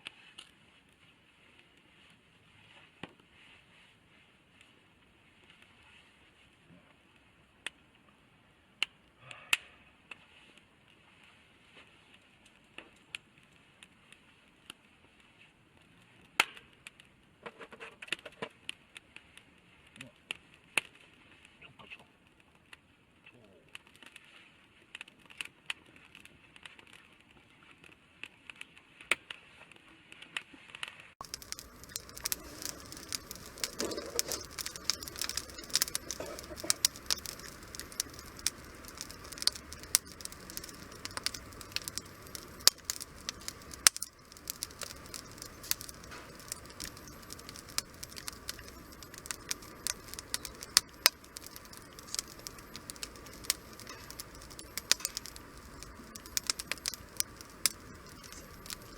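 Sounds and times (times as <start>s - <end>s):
wood fire crackling and popping: 8.7s - 21.5s, 31.2s - 58.9s
fire hiss: 31.2s - 58.9s.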